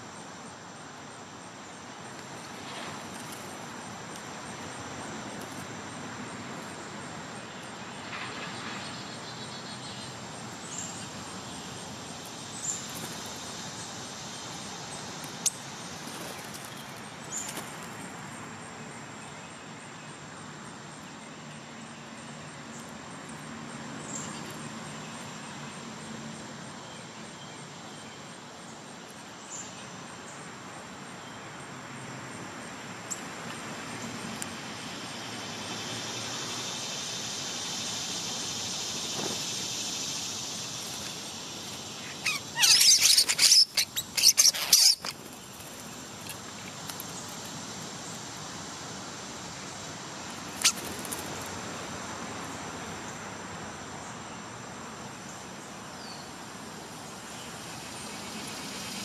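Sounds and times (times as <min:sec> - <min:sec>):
distant traffic hum: 0:00.0 - 0:59.0
insects droning: 0:00.0 - 0:59.0
bird chips: 0:40.1 - 0:47.6, 0:50.5 - 0:51.5.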